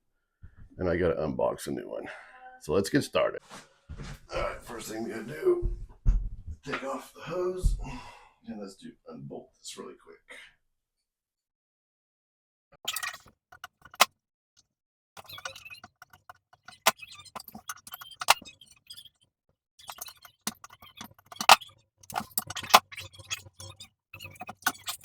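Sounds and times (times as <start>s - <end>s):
metal tools clinking and rattling: 12.9s - 14.1s, 15.2s - 18.4s, 19.8s - 25.0s.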